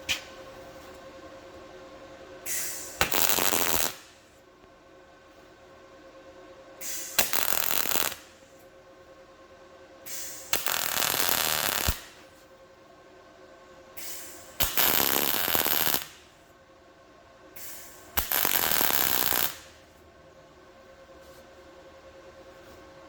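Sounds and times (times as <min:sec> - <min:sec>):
welding crackle: 0:02.6 - 0:04.2, 0:06.9 - 0:08.4, 0:10.2 - 0:12.3, 0:14.6 - 0:16.3, 0:18.1 - 0:19.8.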